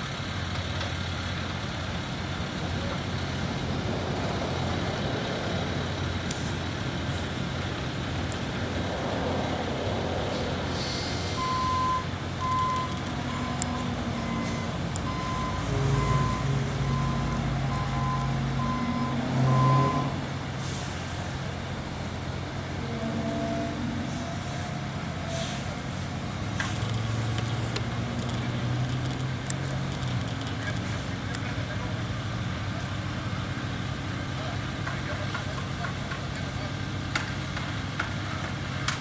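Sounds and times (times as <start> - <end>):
diesel truck engine running: 0.0 - 39.0
backup alarm beeping: 11.4 - 20.2.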